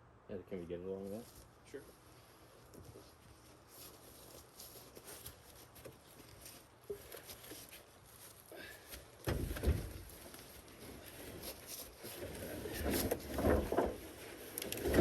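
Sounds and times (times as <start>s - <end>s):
shuffling footsteps: 1.1s - 14.6s
heavy wooden slab thumping down: 9.2s - 10.1s.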